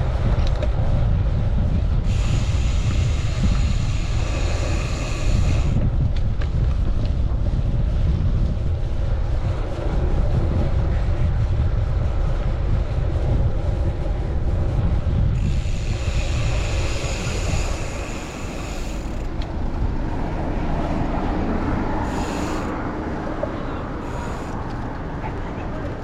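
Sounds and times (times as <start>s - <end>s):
wind buffeting microphone: 0.0s - 26.0s
high hiss: 2.1s - 5.8s, 15.4s - 19.3s, 22.0s - 22.8s.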